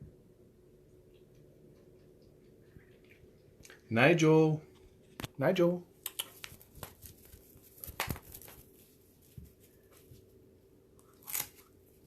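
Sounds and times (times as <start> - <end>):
faint room hum: 0.0 - 12.0
soft handling clicks and rustles: 6.1 - 10.4.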